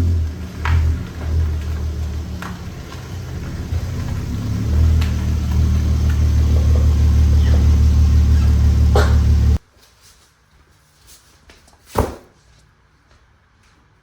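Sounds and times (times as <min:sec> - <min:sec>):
car engine exhaust drone: 0:00.0 - 0:09.6.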